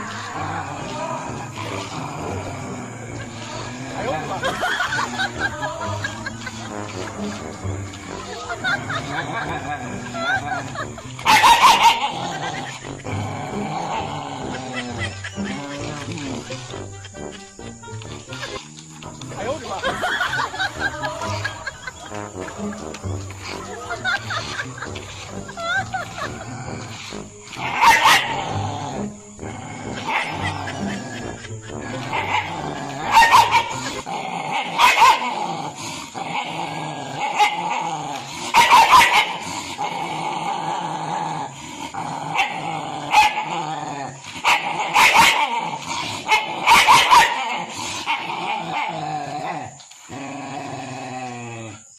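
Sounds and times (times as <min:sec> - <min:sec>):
dog barking: 0:11.2 - 0:12.2, 0:27.6 - 0:28.6, 0:30.0 - 0:30.5, 0:32.1 - 0:34.0, 0:34.7 - 0:35.3, 0:38.5 - 0:39.4, 0:42.4 - 0:43.5, 0:44.4 - 0:45.6, 0:46.3 - 0:47.7.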